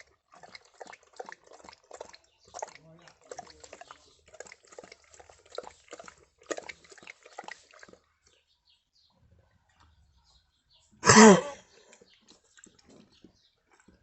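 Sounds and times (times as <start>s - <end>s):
dog coughing and breathing: 11.0s - 11.6s.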